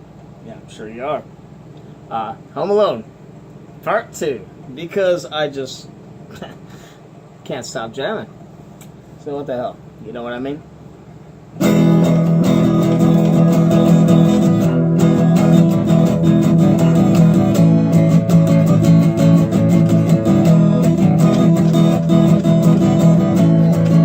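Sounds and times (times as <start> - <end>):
guitar strumming chords: 11.6 - 24.0.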